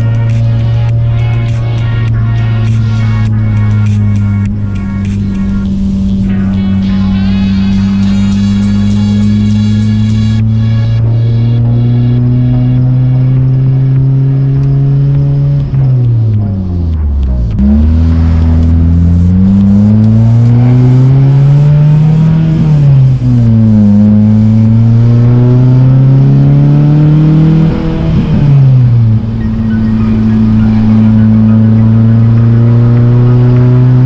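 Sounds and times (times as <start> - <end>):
car engine revving through gears: 0.0 - 34.0.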